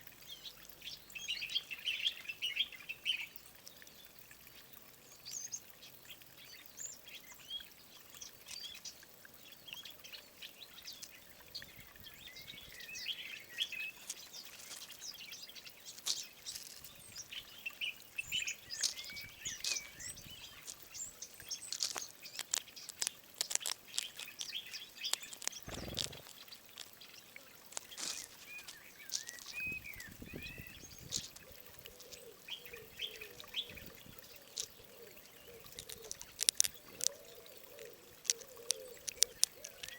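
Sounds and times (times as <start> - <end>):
small birds chirping: 0.0 - 39.9
sharp clicks: 21.7 - 26.9.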